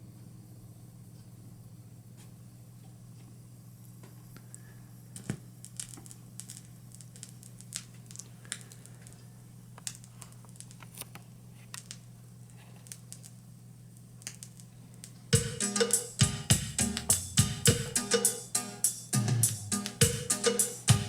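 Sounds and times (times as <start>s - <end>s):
vinyl crackles and pops: 2.1s - 17.8s.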